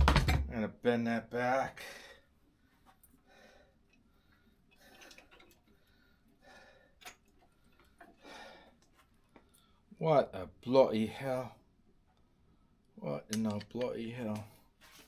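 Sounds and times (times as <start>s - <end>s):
soft scuffs of parts handled: 14.7s - 15.0s.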